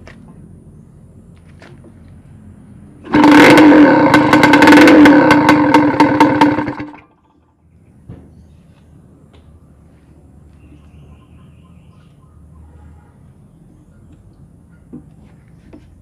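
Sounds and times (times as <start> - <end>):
motorcycle engine running loud: 3.0 - 7.2.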